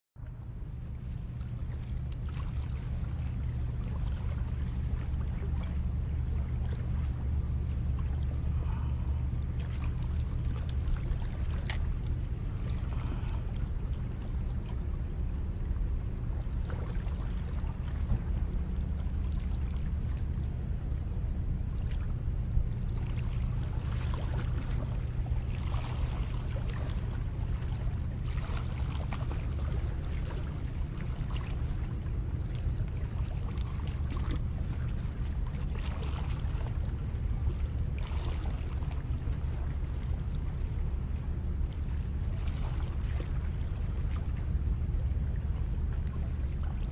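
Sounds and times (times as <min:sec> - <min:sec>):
wind rumbling on microphone: 0:00.2 - 0:46.9
waves washing in: 0:21.6 - 0:45.6.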